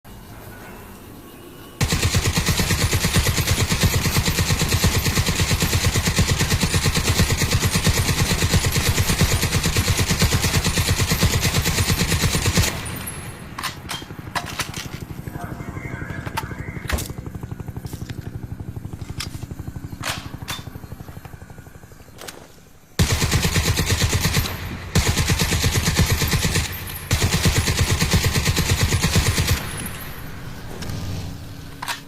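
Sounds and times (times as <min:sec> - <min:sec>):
machine gun firing full-auto: 0:01.8 - 0:21.6, 0:23.0 - 0:30.6.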